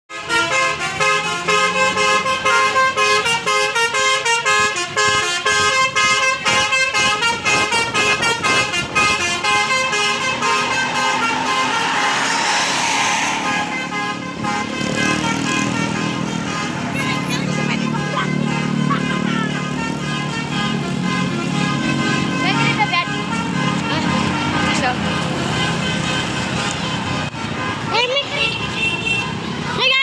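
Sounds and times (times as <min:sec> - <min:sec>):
multi-tone bus horn melody: 0:00.1 - 0:30.0
loud rushing noise: 0:07.6 - 0:16.5.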